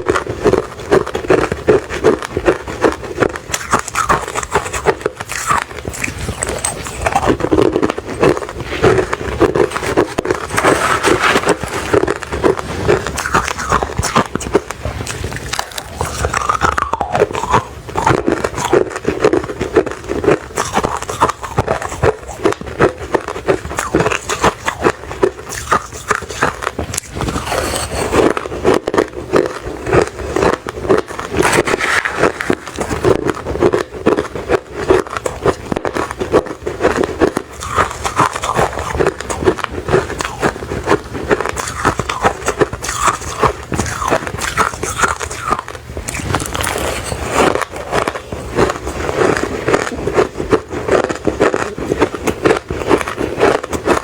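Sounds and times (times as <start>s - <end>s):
person crunching ice: 0.0s - 54.0s.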